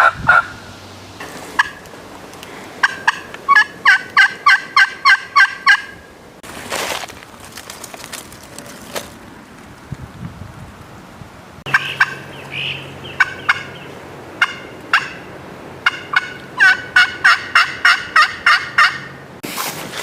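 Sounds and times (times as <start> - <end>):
turkey call yelps: 0.0 - 0.6, 2.8 - 6.0, 11.7 - 19.2
turkey call cutting notes: 1.2 - 1.8, 2.8 - 6.0, 11.7 - 19.2.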